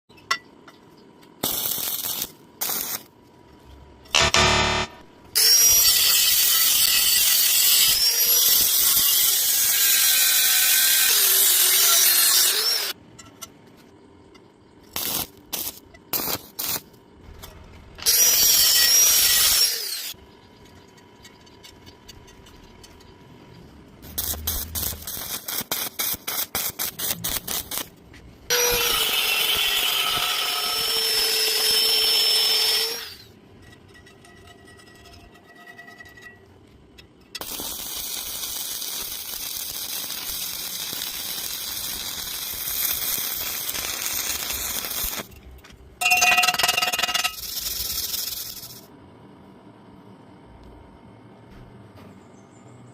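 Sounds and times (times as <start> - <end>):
angle grinder on steel: 4.2 - 13.0, 18.0 - 20.2, 28.5 - 33.3.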